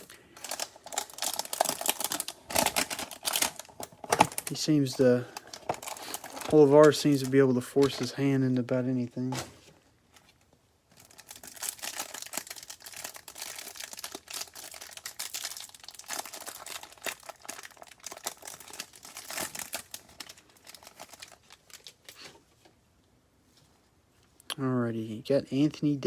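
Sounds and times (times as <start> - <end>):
plastic wrapper crinkling and tearing: 0.0 - 8.3, 10.9 - 22.4.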